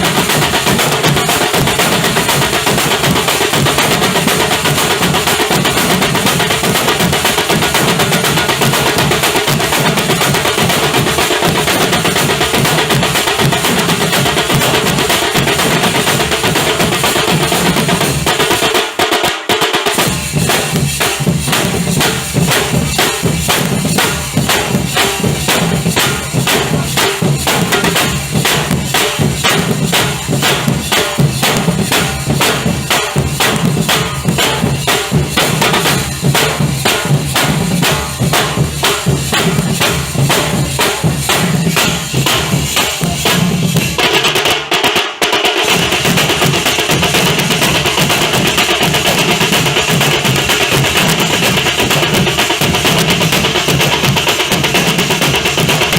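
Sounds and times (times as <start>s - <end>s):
dhol drums and tasha beating: 0.0s - 55.9s.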